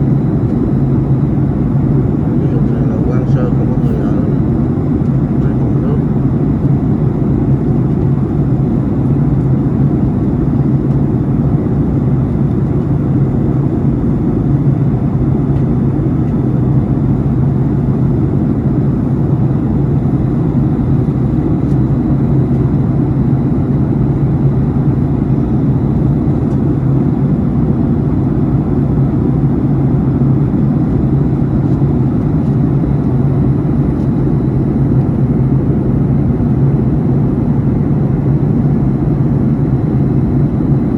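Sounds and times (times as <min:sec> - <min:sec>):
airliner cabin engine drone: 0:00.0 - 0:40.9.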